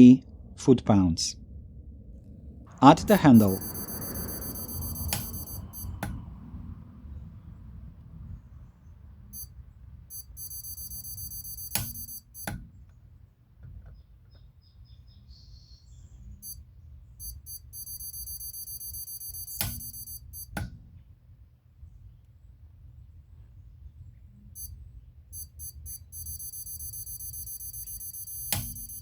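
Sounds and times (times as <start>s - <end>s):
torque meter beeping: 2.8s - 6.2s, 9.3s - 12.6s, 17.2s - 20.7s, 24.6s - 29.0s.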